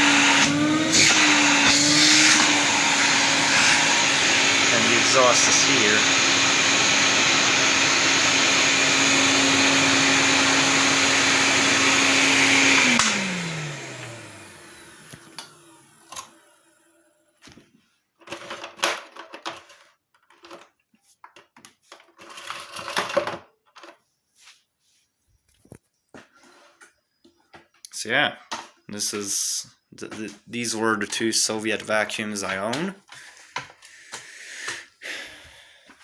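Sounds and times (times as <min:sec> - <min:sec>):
vacuum cleaner motor whine: 0:00.0 - 0:17.2.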